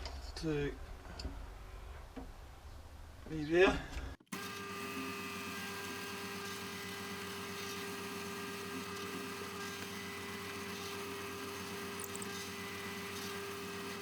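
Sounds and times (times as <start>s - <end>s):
drill press motor humming: 4.3s - 14.0s.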